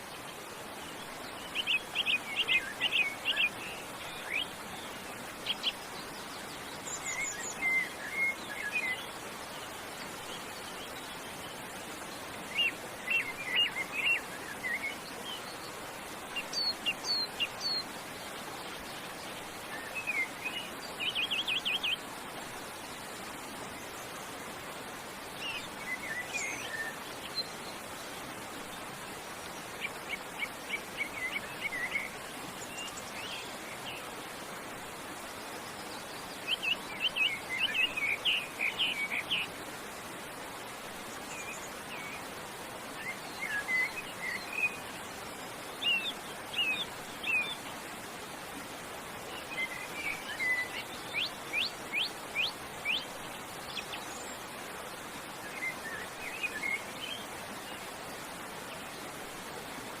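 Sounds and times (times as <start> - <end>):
rushing forest water: 0.0 - 60.0
songbirds chirping and singing: 1.2 - 9.2.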